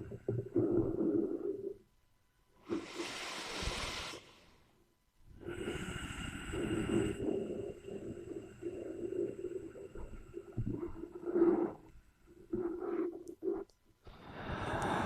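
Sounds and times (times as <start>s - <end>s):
breathy rush of air: 2.7s - 4.5s, 14.1s - 15.0s.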